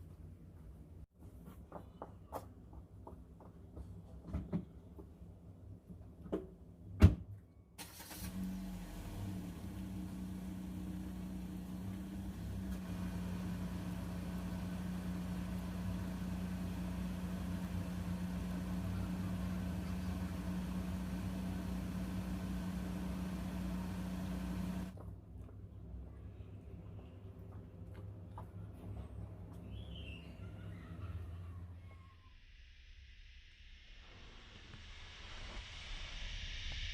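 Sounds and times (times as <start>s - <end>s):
low mechanical hum: 7.8s - 32.2s.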